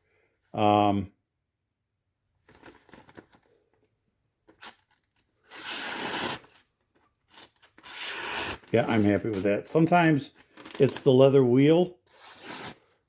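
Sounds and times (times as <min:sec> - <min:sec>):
knife slicing through paper: 0:07.3 - 0:09.4, 0:12.1 - 0:12.9.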